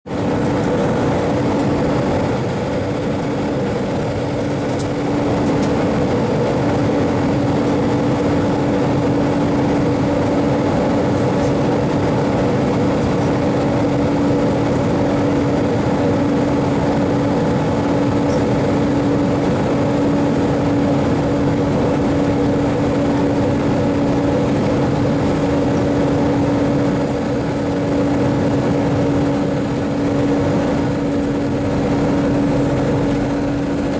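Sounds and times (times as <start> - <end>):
constant low hum: 0.1 - 33.9
jet engine cabin drone: 0.1 - 33.9.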